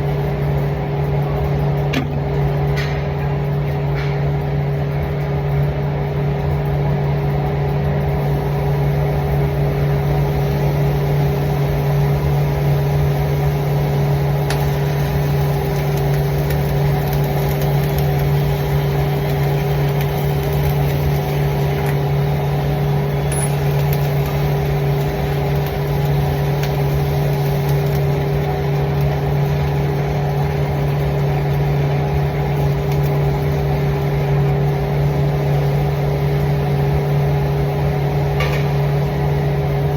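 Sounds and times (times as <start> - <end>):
machine hum with low drone: 0.0 - 39.9
high steady tone: 23.3 - 23.9.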